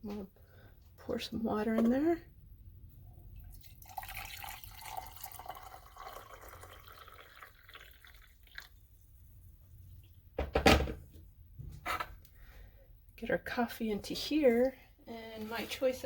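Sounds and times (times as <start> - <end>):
water pouring into pot: 3.3 - 10.3.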